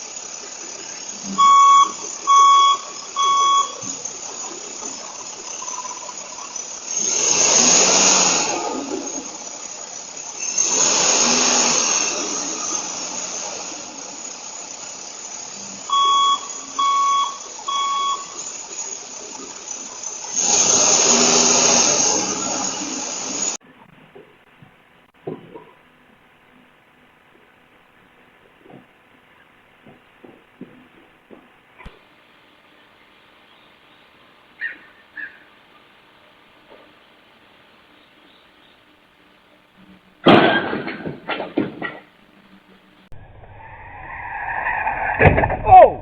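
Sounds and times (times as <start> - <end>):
rushing noise: 0.0 - 23.6, 43.1 - 46.0
electronic alarm beeping: 1.3 - 6.6, 15.8 - 19.2.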